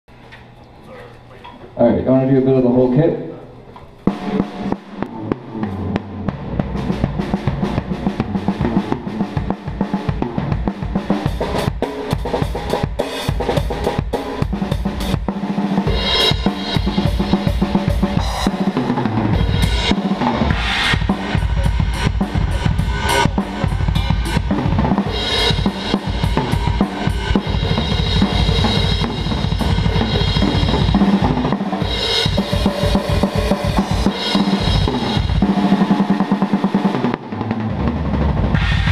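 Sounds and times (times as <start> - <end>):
drum kit groove: 4.0 - 38.9
cymbal crashes: 38.5 - 38.9.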